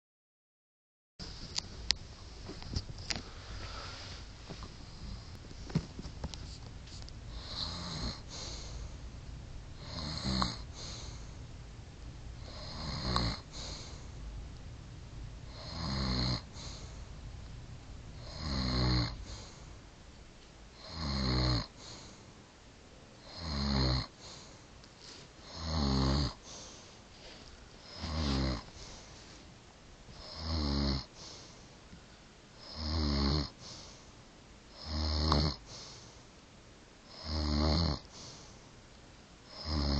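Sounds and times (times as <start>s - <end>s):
woman snoring: 7.3s - 8.7s, 9.8s - 11.3s, 12.4s - 14.0s, 15.5s - 16.9s, 18.2s - 19.5s, 20.8s - 22.0s, 23.2s - 24.4s, 25.4s - 26.6s, 27.8s - 29.0s, 30.1s - 31.2s, 32.6s - 33.6s, 34.7s - 35.7s, 37.1s - 38.1s, 39.5s - 39.9s.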